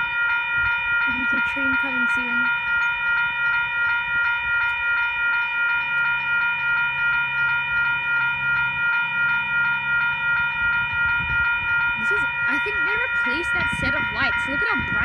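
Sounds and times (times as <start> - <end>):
level crossing bells ringing: 0.0 - 15.0.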